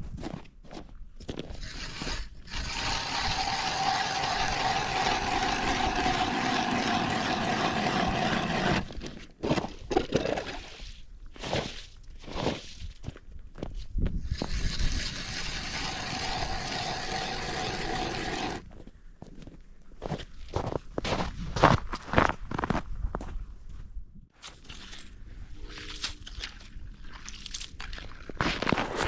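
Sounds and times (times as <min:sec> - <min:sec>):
short scrapes and knocks: 0:01.4 - 0:10.5
ice auger drilling: 0:01.6 - 0:09.1, 0:14.3 - 0:18.6.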